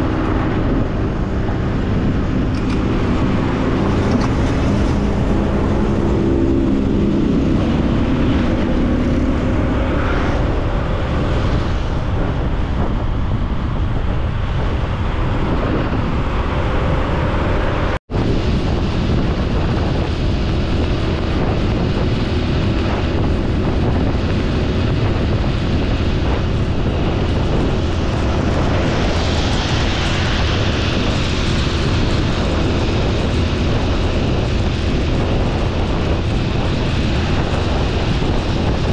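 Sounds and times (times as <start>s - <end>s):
motorcycle engine running: 0.0s - 17.8s
wind rumble on microphone: 0.0s - 38.9s.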